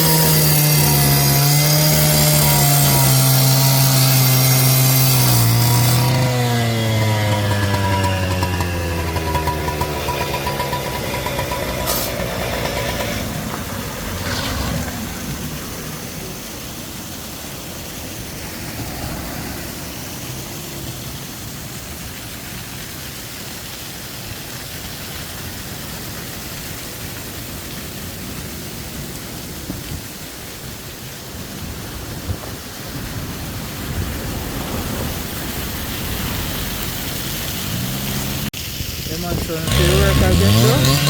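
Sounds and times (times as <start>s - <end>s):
vehicle engine passing: 5.8s - 16.7s, 18.0s - 22.0s, 34.4s - 38.5s, 39.3s - 41.0s.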